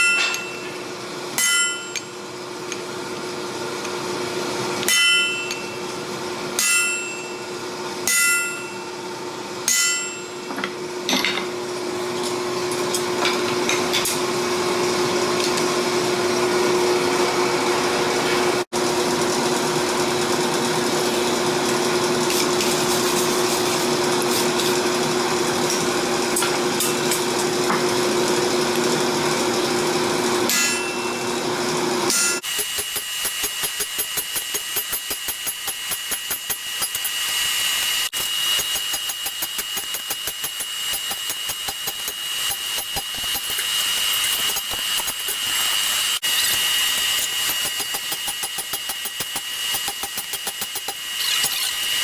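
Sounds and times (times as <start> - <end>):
hammer striking steel on anvil: 0.0 - 0.8, 1.4 - 2.2, 4.8 - 5.8, 6.6 - 7.5, 8.1 - 8.9, 9.7 - 10.6, 30.5 - 31.2, 32.1 - 37.3
forge running: 11.7 - 52.0.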